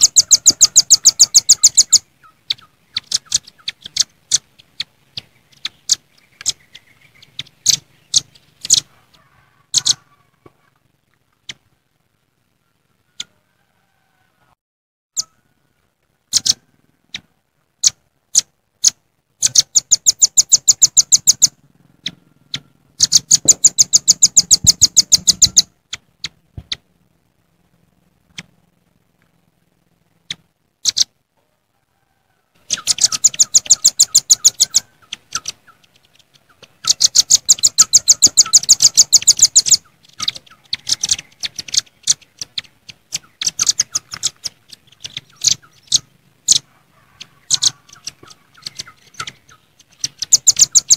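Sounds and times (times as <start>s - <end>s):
birds calling sharp high chips: 0.0s - 10.7s, 16.3s - 26.9s, 30.2s - 31.2s, 32.6s - 50.9s.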